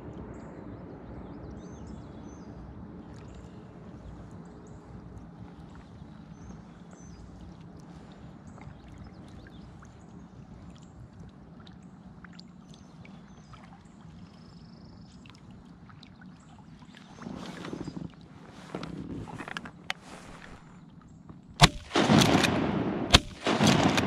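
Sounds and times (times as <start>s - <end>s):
paddle splashing in water: 5.4s - 20.9s.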